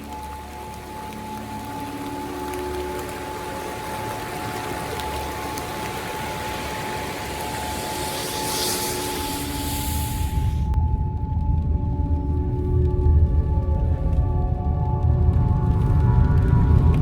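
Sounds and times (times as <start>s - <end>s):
stream flowing over rocks: 0.0s - 10.8s.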